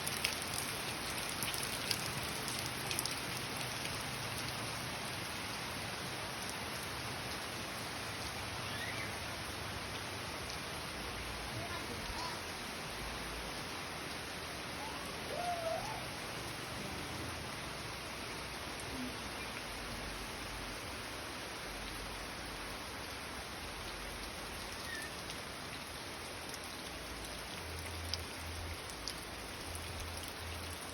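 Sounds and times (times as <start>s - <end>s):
sharp drips: 0.0s - 4.8s, 23.8s - 30.9s
steady rainfall: 0.0s - 30.9s.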